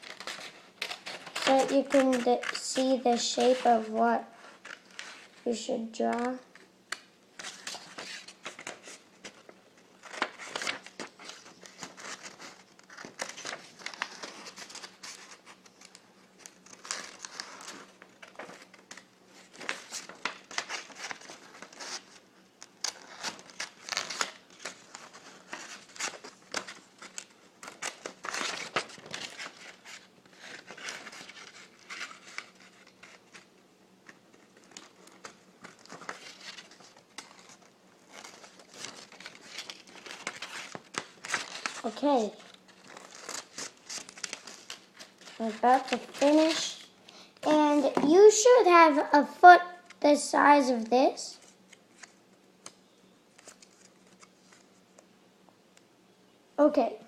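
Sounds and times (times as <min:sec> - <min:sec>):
scissors snipping paper: 0:00.0 - 0:03.8
paper rustling: 0:00.0 - 0:48.7.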